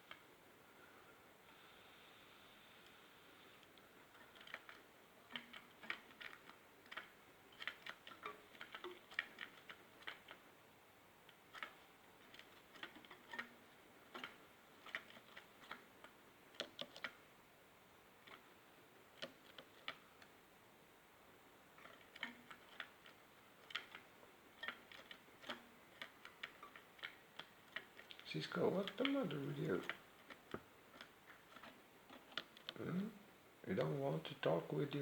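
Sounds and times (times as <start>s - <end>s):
bird pecking clicks and taps: 3.6s - 10.5s, 11.3s - 17.2s, 18.2s - 20.4s, 21.7s - 33.1s.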